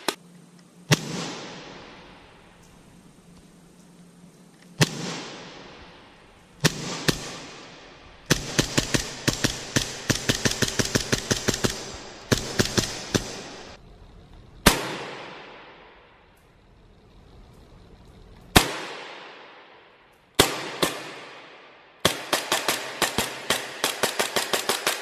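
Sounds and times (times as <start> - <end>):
airsoft pistol shots: 0.9 - 2.0, 4.8 - 5.8, 6.6 - 13.8, 14.7 - 15.8, 18.6 - 19.8, 20.4 - 25.0.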